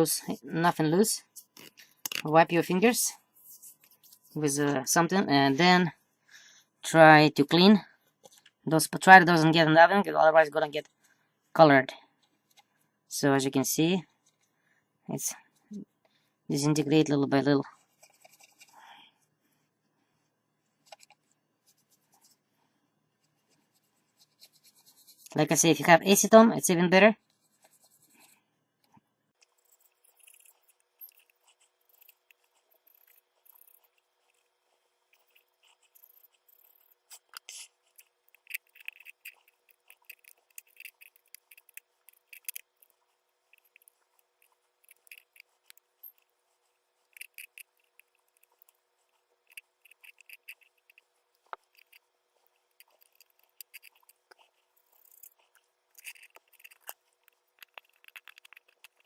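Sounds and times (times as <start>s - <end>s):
cotton swab scrubbing: 1.3s - 4.6s, 23.2s - 25.5s, 29.4s - 59.0s
small clicks: 52.7s - 59.0s.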